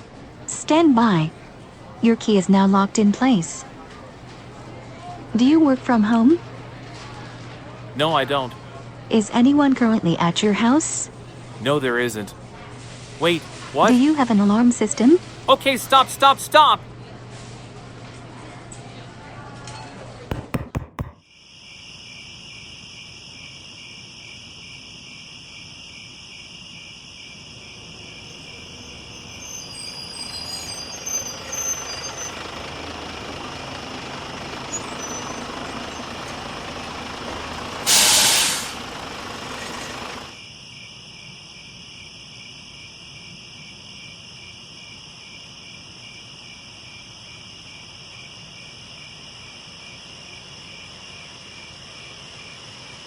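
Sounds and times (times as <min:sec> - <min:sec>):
truck engine running: 0:00.0 - 0:09.8, 0:10.9 - 0:17.0, 0:28.1 - 0:40.4
crickets chirping: 0:00.3 - 0:17.0, 0:21.2 - 0:53.0
air brake hiss: 0:37.5 - 0:40.3.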